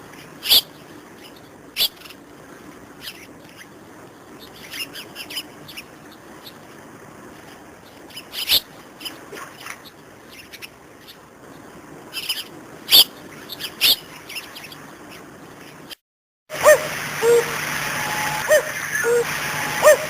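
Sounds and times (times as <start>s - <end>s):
faint background hiss: 0.0s - 16.0s
birds calling: 0.2s - 2.3s, 3.0s - 6.6s, 7.8s - 16.0s, 16.6s - 20.0s
low whistled bird notes: 17.2s - 20.0s.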